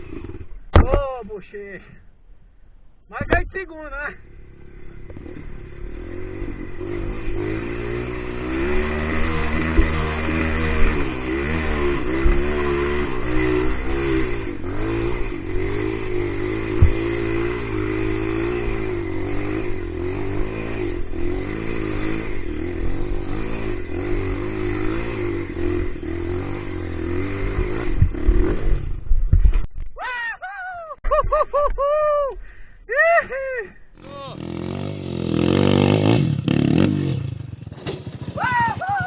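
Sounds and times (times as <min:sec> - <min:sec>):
motorcycle engine revving: 0:00.0 - 0:01.0, 0:03.2 - 0:29.7, 0:33.9 - 0:39.0
sharp knocks: 0:16.7 - 0:17.1.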